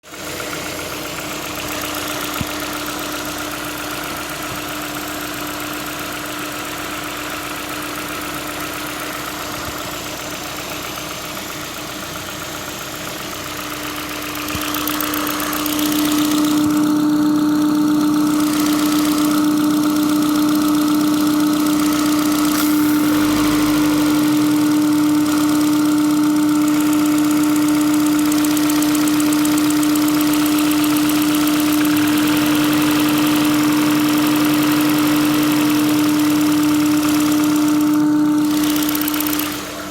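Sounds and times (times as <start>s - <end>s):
car engine idling: 0.0s - 39.9s
engine knocking: 0.0s - 39.9s.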